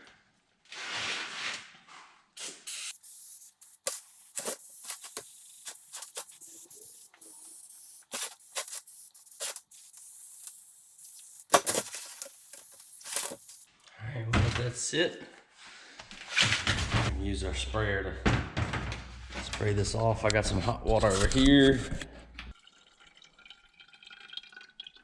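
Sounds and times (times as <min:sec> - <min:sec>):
spray can hissing: 0:02.4 - 0:13.7.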